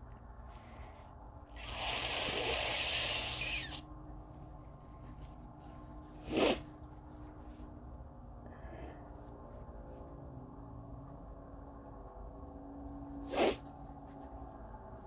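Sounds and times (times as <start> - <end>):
person blowing nose: 1.6 - 3.8, 13.3 - 13.6.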